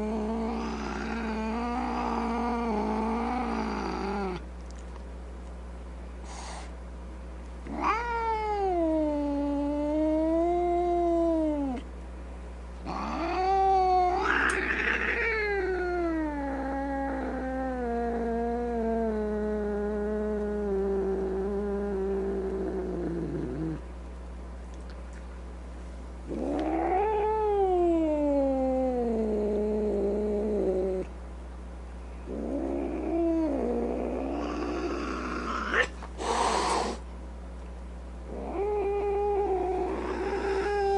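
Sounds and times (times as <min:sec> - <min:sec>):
cat yowling: 0:07.7 - 0:11.8, 0:12.9 - 0:18.2, 0:38.3 - 0:40.9.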